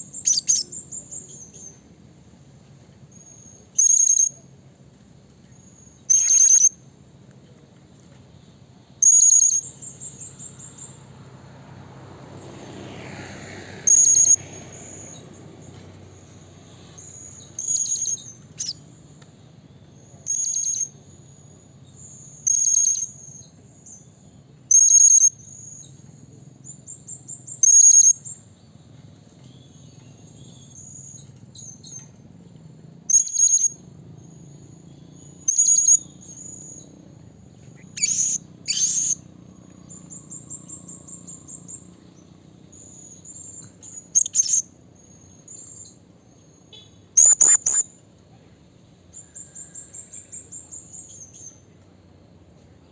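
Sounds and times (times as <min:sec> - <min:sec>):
parrot high-pitched calls: 0:00.1 - 0:00.8, 0:06.1 - 0:06.8, 0:13.8 - 0:14.4, 0:37.8 - 0:39.2, 0:43.9 - 0:44.7, 0:46.8 - 0:48.0.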